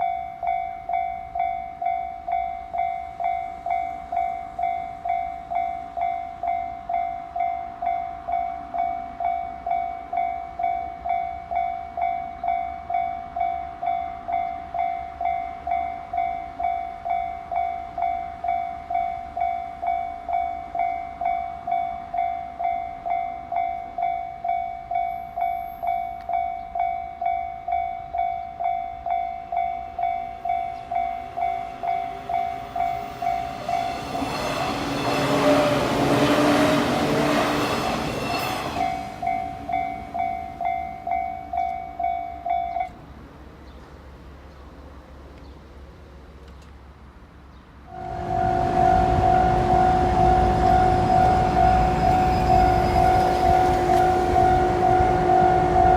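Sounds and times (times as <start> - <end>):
level-crossing warning bell: 0.0 - 43.1, 47.9 - 55.9
rushing noise: 47.9 - 55.9.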